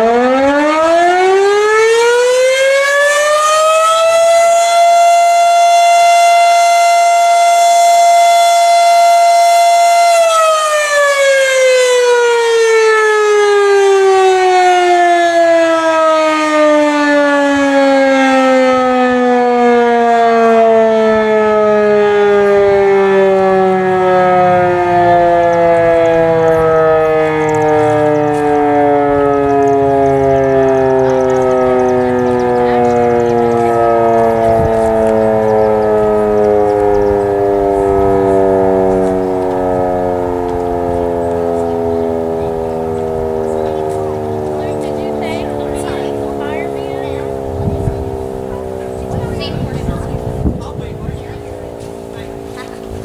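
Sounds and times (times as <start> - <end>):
mechanical fire siren winding: 0.0 - 49.2.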